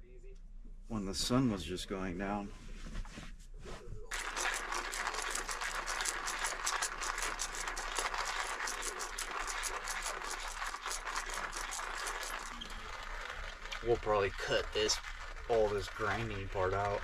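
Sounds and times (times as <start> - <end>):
coffee grinder grinding beans: 4.1 - 17.0.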